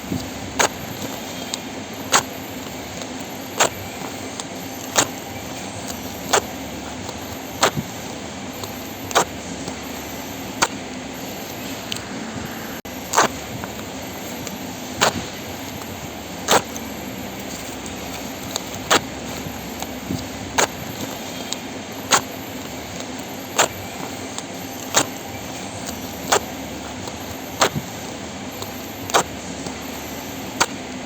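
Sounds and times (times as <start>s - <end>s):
low background hum: 0.0s - 31.0s.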